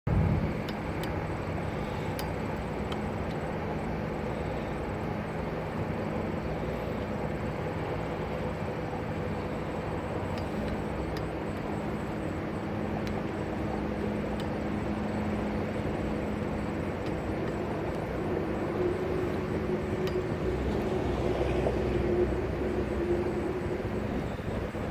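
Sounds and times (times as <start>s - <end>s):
highway traffic drone: 0.1s - 24.9s.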